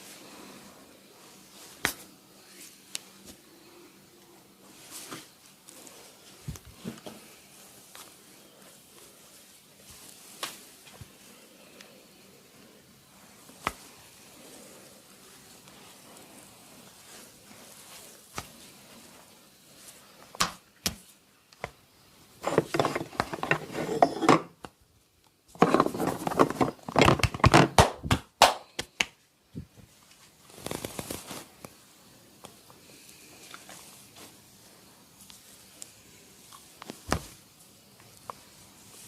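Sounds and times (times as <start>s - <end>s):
hands rubbing skin and hair: 4.6s - 21.8s, 30.0s - 31.8s, 33.4s - 39.0s.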